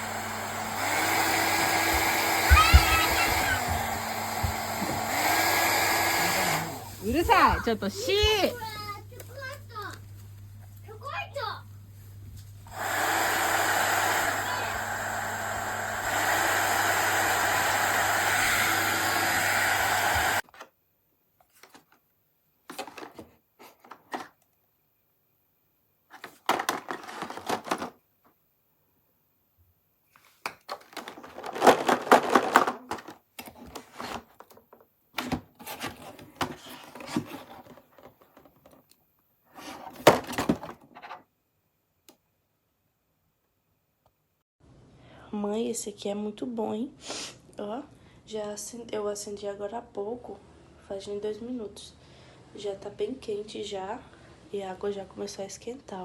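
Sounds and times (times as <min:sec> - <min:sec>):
hair dryer blowing: 0:00.0 - 0:08.6, 0:12.7 - 0:20.4.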